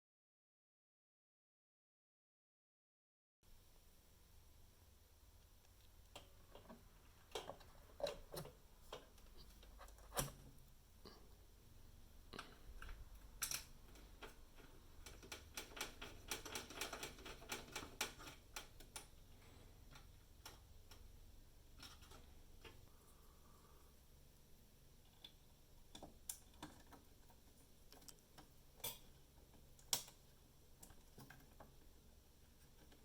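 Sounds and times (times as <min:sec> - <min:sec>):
computer hardware clicks and taps: 0:05.6 - 0:10.5, 0:12.4 - 0:19.2.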